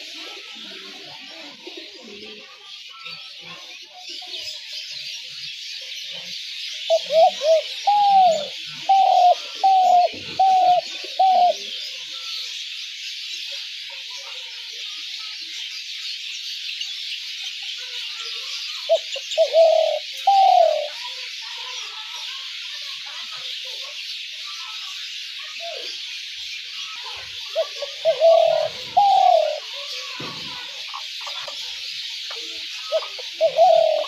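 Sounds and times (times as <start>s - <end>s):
dove cooing: 6.9s - 11.8s, 18.9s - 21.0s, 27.5s - 30.2s, 32.8s - 34.0s.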